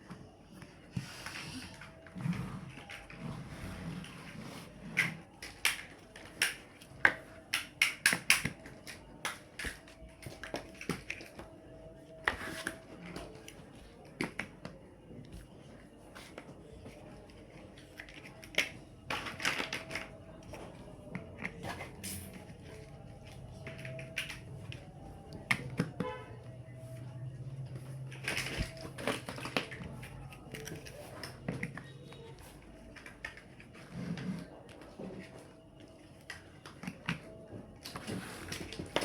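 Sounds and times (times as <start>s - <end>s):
plastic blocks clicking together: 5.0s - 11.5s, 18.0s - 20.2s.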